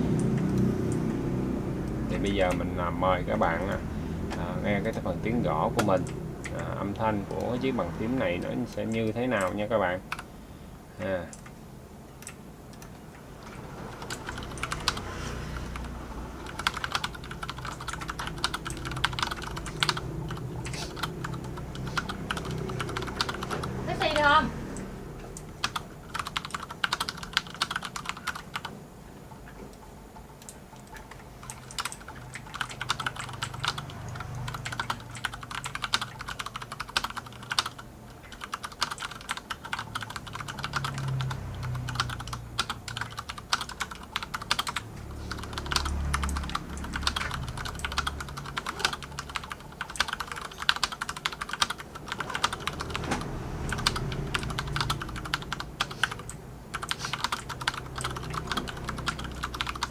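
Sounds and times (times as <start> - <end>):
mechanical keyboard typing: 0.0 - 10.3, 12.2 - 28.8, 30.3 - 59.9.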